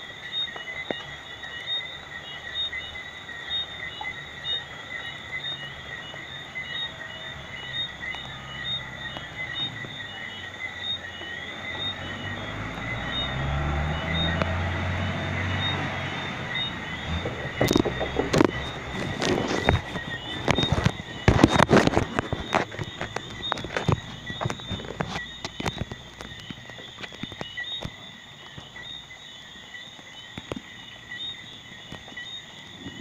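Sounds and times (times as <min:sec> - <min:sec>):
frogs chirping: 0:00.0 - 0:33.0
rain falling: 0:05.7 - 0:27.9.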